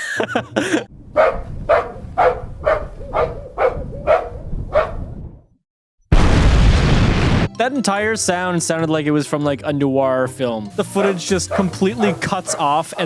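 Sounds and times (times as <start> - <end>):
dog barking: 1.2 - 5.1, 11.0 - 13.0.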